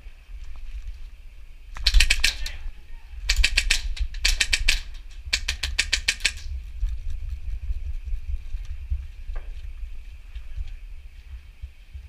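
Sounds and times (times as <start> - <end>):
airsoft guns firing: 1.8 - 6.5.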